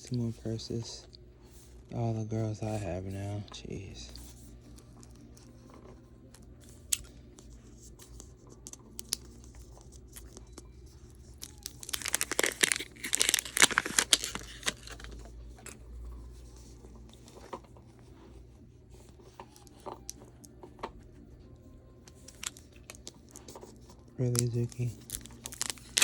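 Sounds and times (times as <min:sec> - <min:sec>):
plastic wrapper tearing and crinkling: 0:08.6 - 0:15.8, 0:22.1 - 0:26.0.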